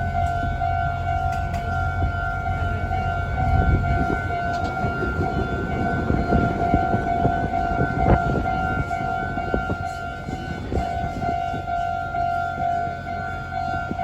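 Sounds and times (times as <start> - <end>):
heavy low rumble: 0.0 - 14.0
level crossing warning bell: 0.0 - 14.0.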